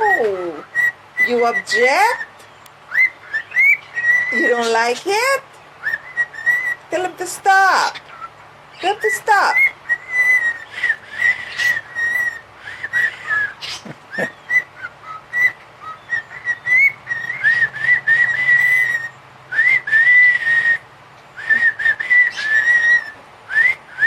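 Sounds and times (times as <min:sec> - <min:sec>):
cockatiel whistling: 0:00.1 - 0:02.3, 0:02.9 - 0:04.5, 0:05.8 - 0:06.8, 0:09.5 - 0:20.8, 0:21.4 - 0:24.0.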